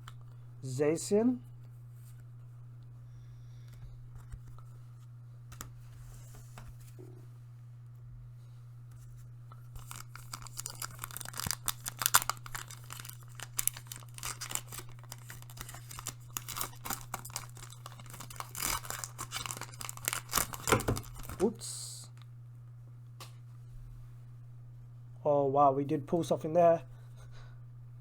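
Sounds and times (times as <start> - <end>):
steady low hum: 0.0 - 28.0
foil wrapper tearing and crinkling: 9.7 - 21.5.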